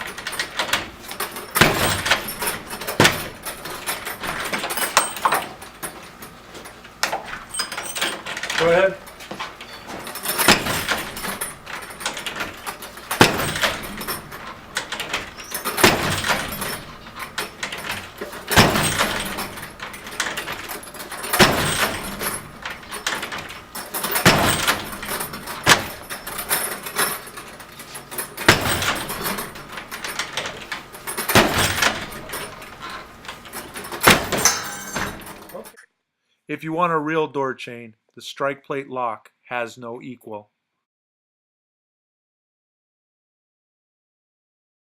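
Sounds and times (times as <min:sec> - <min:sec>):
heavy bag striking a door: 0:00.1 - 0:05.6, 0:10.0 - 0:16.9, 0:17.5 - 0:26.3, 0:28.4 - 0:30.2, 0:31.2 - 0:32.5, 0:34.0 - 0:35.5.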